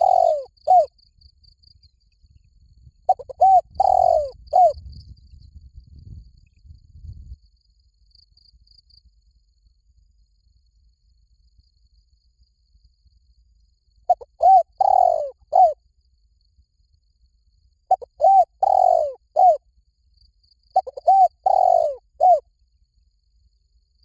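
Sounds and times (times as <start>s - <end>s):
dove cooing: 0.0s - 0.9s, 3.1s - 4.8s, 14.1s - 15.8s, 17.9s - 19.6s, 20.8s - 22.4s.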